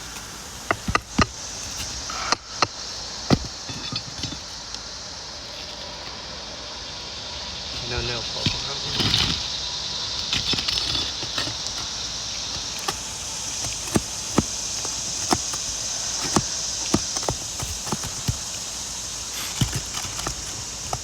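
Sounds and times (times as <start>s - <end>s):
shingles being pried up: 0.0s - 4.8s, 7.7s - 21.0s
steady high hiss: 0.0s - 21.0s.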